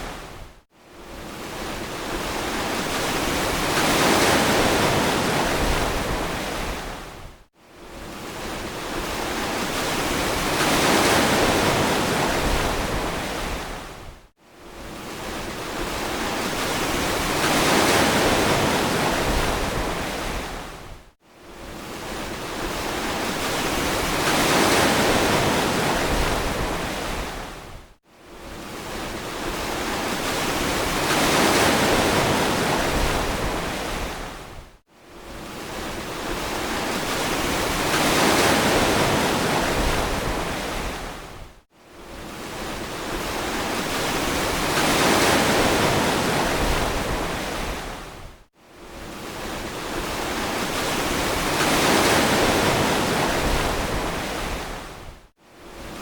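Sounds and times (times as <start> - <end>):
ocean surf washing: 28.5 - 34.5, 35.3 - 41.4, 42.1 - 48.1, 49.0 - 55.0.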